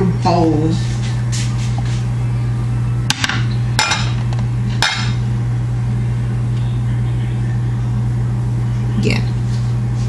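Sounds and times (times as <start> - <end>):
low electrical hum: 0.0 - 10.0
bowls knocking and clinking: 3.1 - 4.2.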